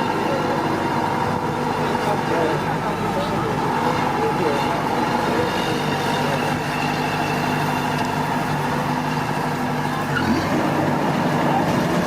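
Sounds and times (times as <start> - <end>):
engine running steadily: 0.0 - 12.0.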